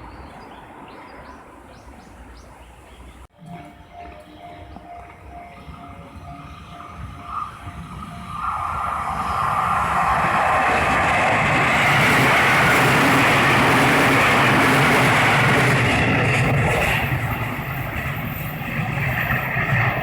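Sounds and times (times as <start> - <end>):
level crossing warning bell: 3.6 - 8.5
train wheels rushing on rails: 6.0 - 20.0.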